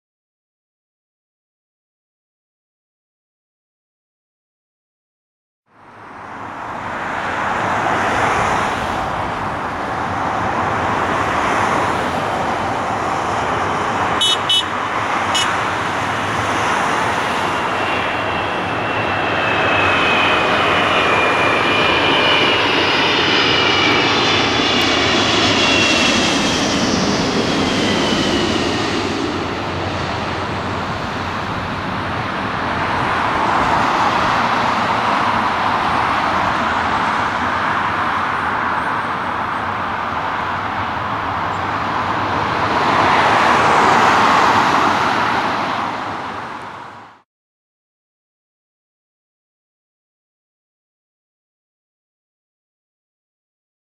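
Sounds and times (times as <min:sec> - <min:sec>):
jet engines roaring: 0:05.9 - 0:47.2.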